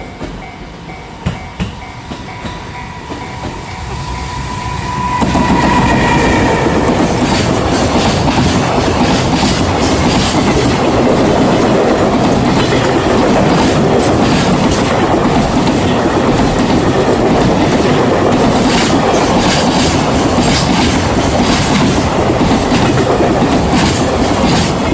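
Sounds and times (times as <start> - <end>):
train cars rumbling: 0.0 - 24.9
wheels clacking over rail joints: 7.1 - 24.9.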